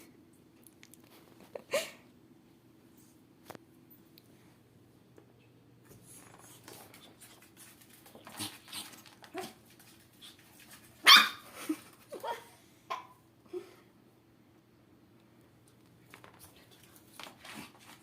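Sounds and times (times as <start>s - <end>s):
puppy barking: 11.0s - 11.4s.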